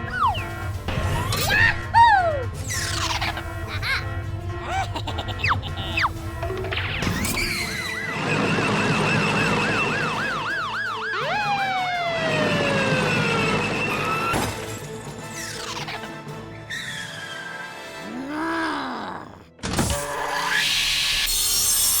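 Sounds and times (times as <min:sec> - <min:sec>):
fast warbling siren: 0:07.4 - 0:14.4
long falling whistle: 0:08.8 - 0:14.3
upward whoop: 0:11.2 - 0:12.0.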